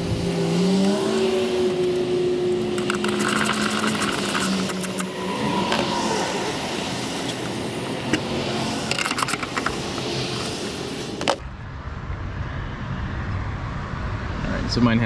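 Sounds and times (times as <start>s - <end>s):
steady hiss: 3.6s - 11.3s.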